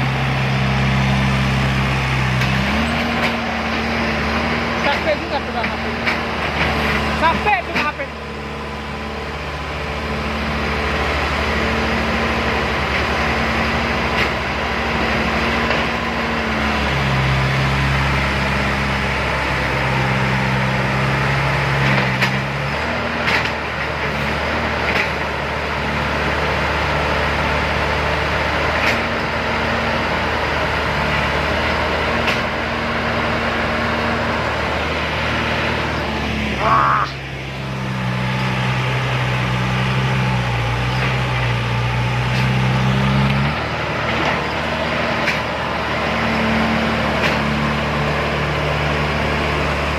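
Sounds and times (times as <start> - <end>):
heavy diesel engine running: 0.0 - 49.9.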